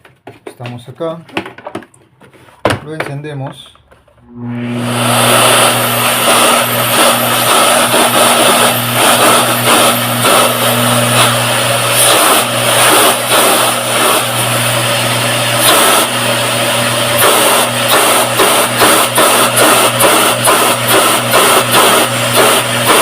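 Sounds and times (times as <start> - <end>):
vacuum cleaner running: 4.2 - 23.0.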